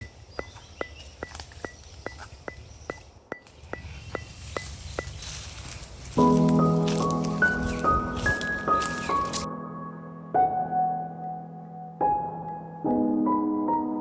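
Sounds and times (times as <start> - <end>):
steady ticking: 0.0 - 5.2
music with sustained notes: 5.1 - 14.0.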